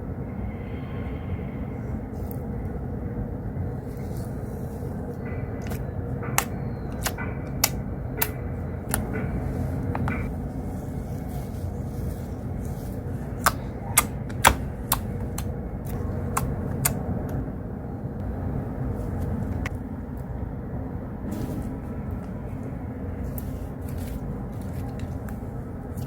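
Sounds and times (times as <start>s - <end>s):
low rumble of outside noise: 0.0s - 26.0s.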